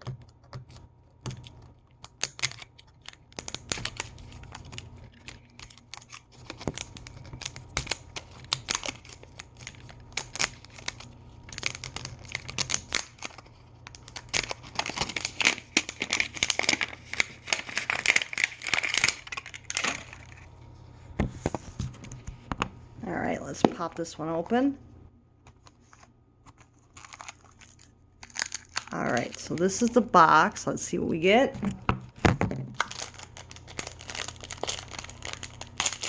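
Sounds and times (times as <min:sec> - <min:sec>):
plastic packaging crinkling: 0:01.4 - 0:20.8, 0:25.5 - 0:30.2, 0:31.6 - 0:36.0.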